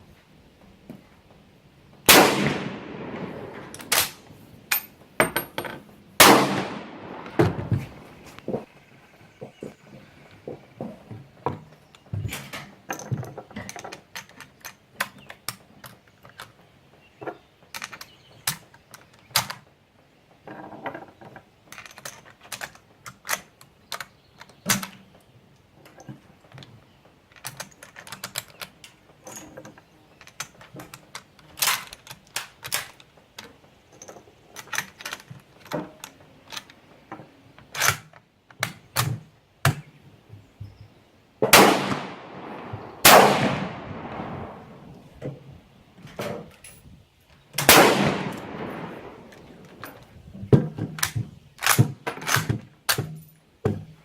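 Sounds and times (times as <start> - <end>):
rifles and ammunition clicking: 2.1 - 8.6, 11.9 - 16.6, 17.6 - 19.7, 21.7 - 39.9, 41.4 - 45.2, 46.1 - 50.2, 50.8 - 53.4.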